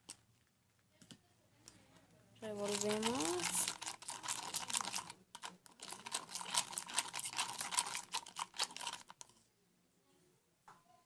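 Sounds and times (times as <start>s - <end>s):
spoon stirring in container: 2.5s - 9.3s.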